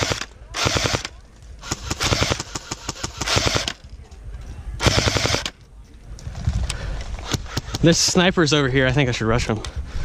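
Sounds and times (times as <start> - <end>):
airsoft guns firing bursts: 0.0 - 3.8, 4.8 - 5.6.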